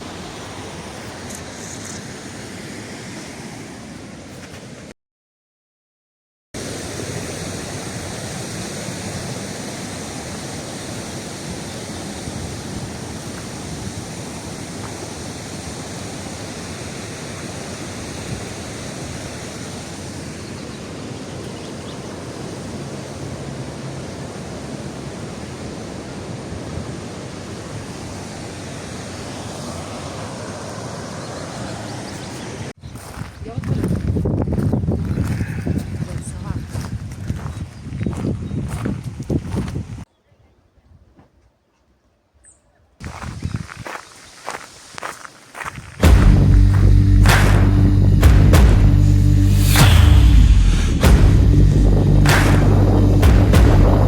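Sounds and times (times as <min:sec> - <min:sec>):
waterfall rushing: 0:00.0 - 0:03.6, 0:06.6 - 0:21.2, 0:22.0 - 0:32.7, 0:46.0 - 0:54.0.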